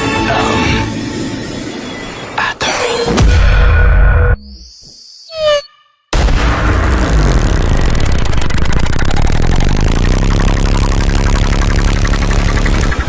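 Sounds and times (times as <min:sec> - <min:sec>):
buzzing rumbling engine-like effect: 0:06.2 - 0:13.0.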